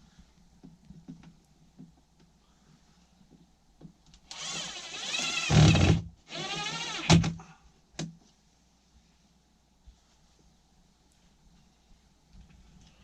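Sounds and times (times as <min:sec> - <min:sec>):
small power tool motor: 0:04.3 - 0:07.2.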